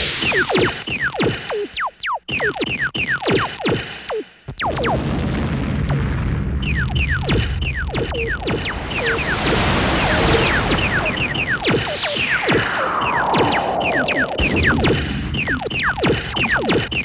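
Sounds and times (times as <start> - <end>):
laser blaster shots: 7.0 - 17.0
low rumble: 8.1 - 16.5.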